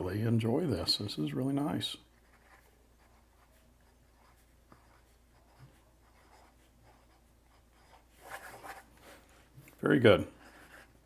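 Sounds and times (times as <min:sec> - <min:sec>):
pen scratching on paper: 0:02.1 - 0:08.9.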